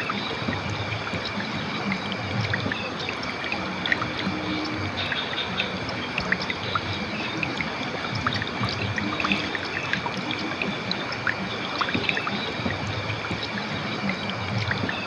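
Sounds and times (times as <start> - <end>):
river water flowing and gurgling: 0.0 - 15.0.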